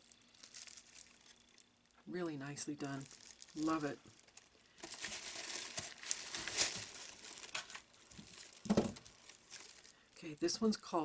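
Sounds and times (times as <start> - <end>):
soap wrapping crinkling: 0.0 - 11.0.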